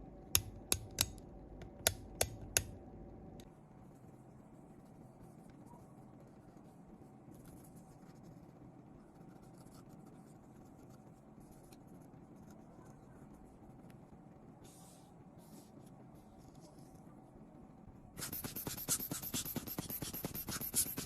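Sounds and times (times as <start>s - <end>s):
low room hum: 0.0s - 21.0s.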